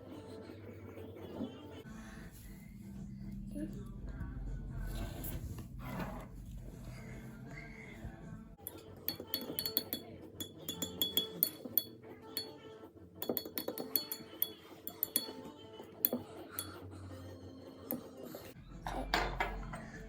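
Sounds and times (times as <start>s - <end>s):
glass jar clinking: 8.7s - 12.5s, 13.2s - 15.4s.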